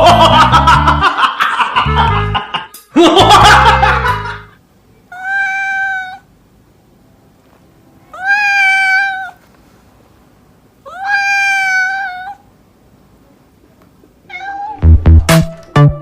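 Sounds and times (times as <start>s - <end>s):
cat meowing: 5.1s - 6.3s, 8.1s - 9.4s, 10.8s - 12.4s, 14.2s - 15.0s
electronic music with heavy beat: 14.8s - 16.0s.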